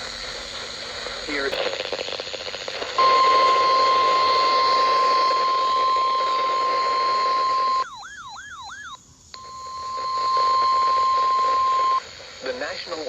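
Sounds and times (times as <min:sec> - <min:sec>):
high-pitched alarm tone: 0:03.0 - 0:12.0.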